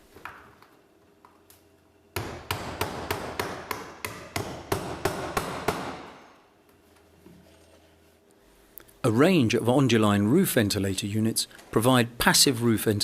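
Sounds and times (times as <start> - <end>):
hammer striking nail: 2.2 - 6.2.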